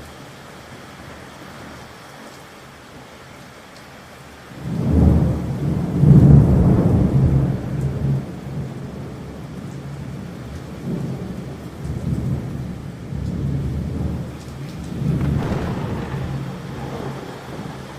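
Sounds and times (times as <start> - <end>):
rain hiss: 0.0 - 17.9
rolling thunder: 14.9 - 17.9.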